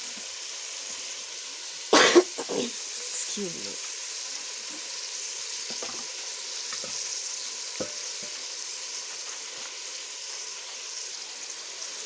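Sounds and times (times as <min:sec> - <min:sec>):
fish sizzling in hot oil: 0:00.0 - 0:12.0
utensil knocking against pan: 0:07.8 - 0:08.4.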